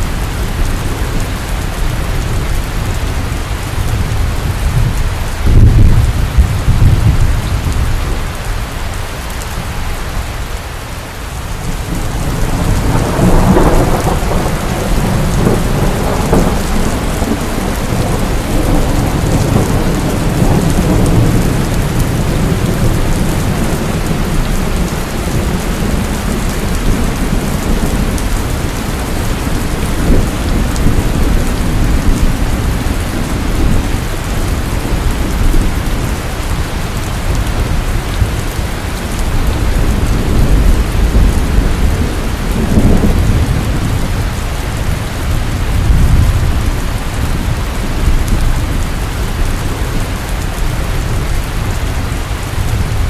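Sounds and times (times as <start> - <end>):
thunder crack and rumble: 0.0 - 8.3, 11.6 - 53.0
heavy rain downpour: 0.0 - 53.0.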